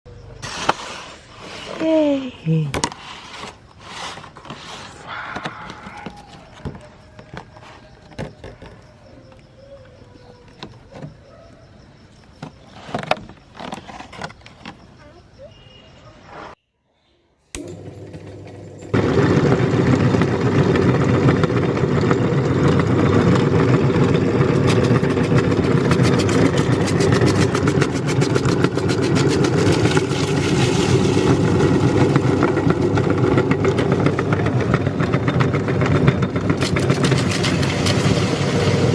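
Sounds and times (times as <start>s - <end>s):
electric meat grinder running: 17.6s - 38.9s.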